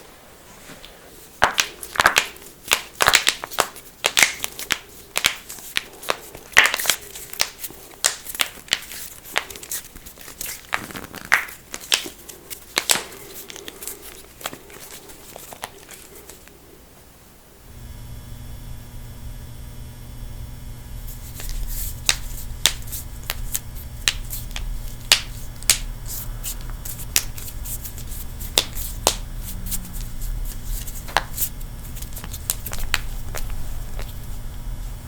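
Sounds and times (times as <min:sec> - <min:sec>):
steady low hum: 0:03.7 - 0:35.0.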